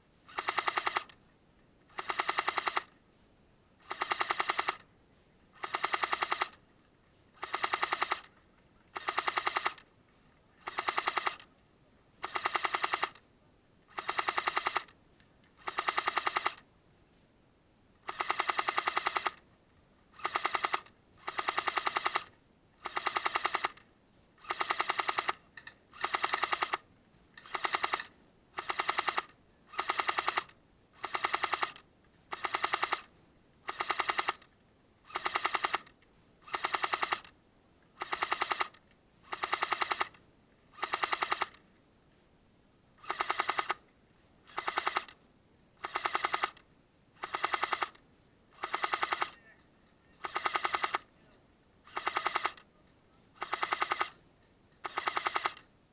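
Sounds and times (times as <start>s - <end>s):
airsoft gun firing bursts: 0.3s - 1.1s, 1.9s - 2.9s, 3.8s - 4.8s, 5.6s - 6.6s, 7.4s - 8.3s, 8.9s - 9.8s, 10.6s - 11.5s, 12.2s - 13.2s, 13.9s - 15.0s, 15.6s - 16.6s, 18.0s - 19.4s, 20.1s - 23.8s, 24.4s - 26.8s, 43.0s - 43.8s, 45.8s - 46.6s, 48.6s - 49.4s, 50.2s - 51.1s, 51.8s - 52.6s, 53.4s - 54.2s.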